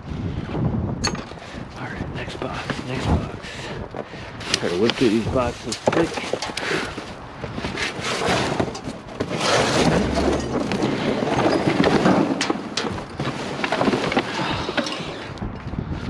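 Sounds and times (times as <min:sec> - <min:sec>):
low rumble of wind on microphone: 0:00.0 - 0:16.0
hands rummaging through junk: 0:02.6 - 0:15.4.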